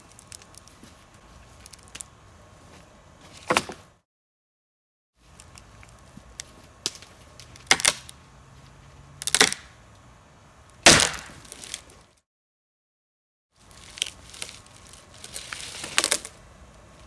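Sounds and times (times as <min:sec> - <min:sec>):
wooden branches snapping: 0:05.4 - 0:08.2, 0:09.2 - 0:09.7, 0:10.8 - 0:12.0, 0:13.8 - 0:16.4.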